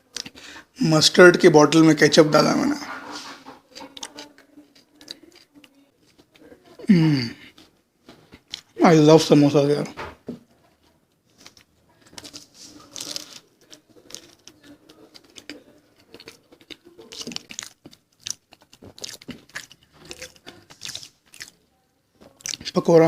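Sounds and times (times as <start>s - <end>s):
crunching and chewing: 0.0s - 0.4s, 2.3s - 8.8s, 10.5s - 23.0s
mouth sounds: 0.0s - 7.6s.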